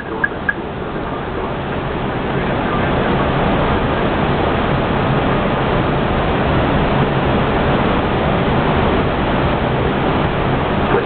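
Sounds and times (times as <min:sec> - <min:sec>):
aircraft cockpit rushing noise: 0:00.0 - 0:04.7.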